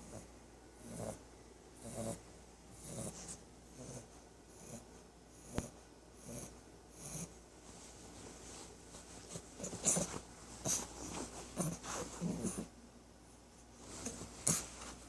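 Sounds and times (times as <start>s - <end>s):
puppy snoring: 0.0s - 7.4s, 9.3s - 12.8s.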